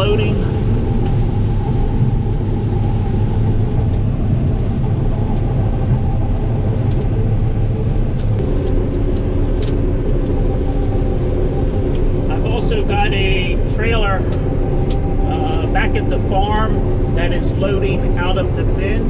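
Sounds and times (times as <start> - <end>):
combine harvester engine drone: 0.0 - 19.0
higher hum: 0.0 - 19.0.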